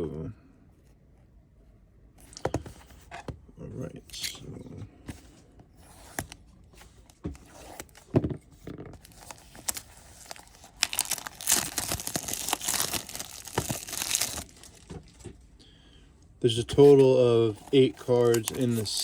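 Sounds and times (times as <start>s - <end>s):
cardboard box tearing: 9.0s - 14.5s
packaging crinkling: 9.0s - 15.2s, 17.6s - 19.0s.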